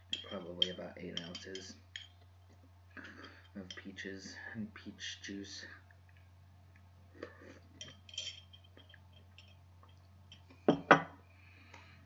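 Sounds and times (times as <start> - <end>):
utensil clinking against dish: 0.0 - 2.2, 3.0 - 4.0, 7.8 - 11.1.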